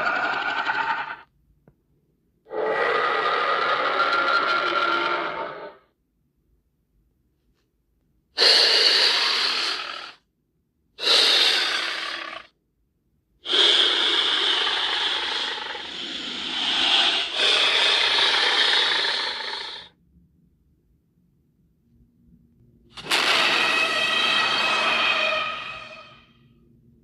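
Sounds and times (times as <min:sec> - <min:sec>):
creature roars: 0:00.0 - 0:01.2, 0:02.5 - 0:05.8, 0:08.4 - 0:10.2, 0:11.0 - 0:12.5, 0:13.5 - 0:19.9, 0:23.0 - 0:26.3.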